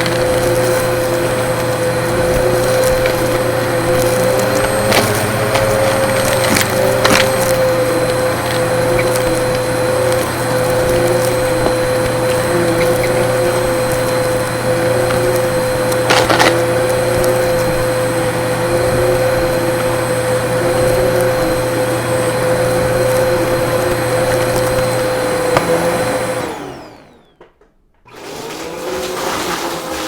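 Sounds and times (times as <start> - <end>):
vacuum cleaner motor whining: 0.0 - 30.0.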